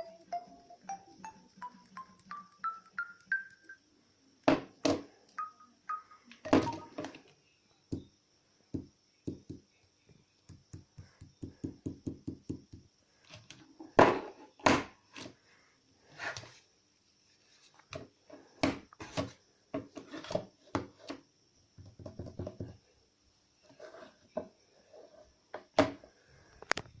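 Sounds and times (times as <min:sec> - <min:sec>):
knocks and taps on hard surface: 0:08.7 - 0:09.7, 0:10.5 - 0:12.9, 0:21.8 - 0:22.8.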